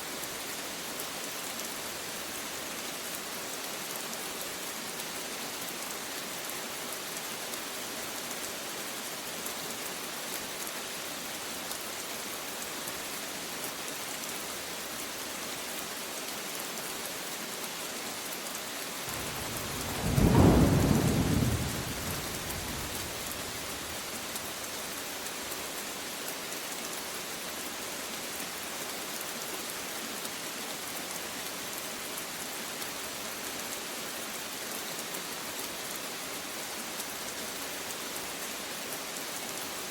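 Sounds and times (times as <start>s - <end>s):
heavy rain falling: 0.1s - 39.7s
thunder clap rumbling: 19.1s - 24.0s.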